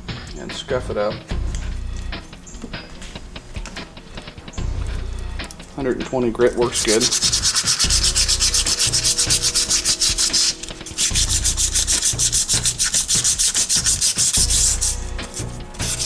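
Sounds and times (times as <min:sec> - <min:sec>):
sandpaper rubbing on metal: 0:06.6 - 0:16.0.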